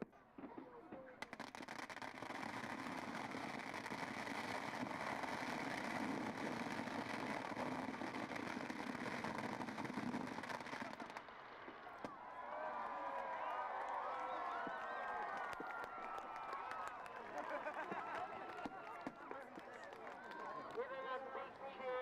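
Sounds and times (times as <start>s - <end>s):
firecrackers crackling: 0.9s - 12.2s.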